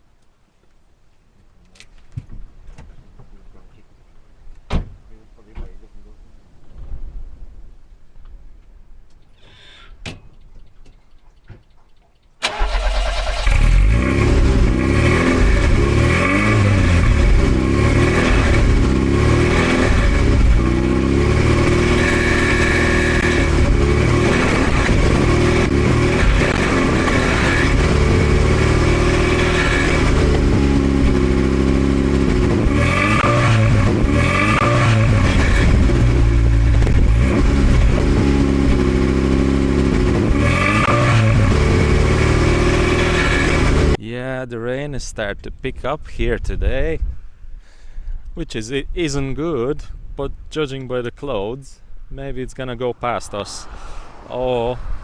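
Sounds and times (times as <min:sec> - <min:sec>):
car engine starting and revving: 0:12.4 - 0:44.0, 0:53.2 - 0:55.0.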